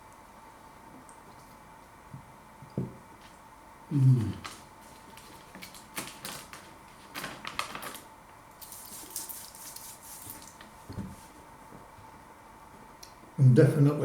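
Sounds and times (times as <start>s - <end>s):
low mouth sound: 3.9s - 4.4s.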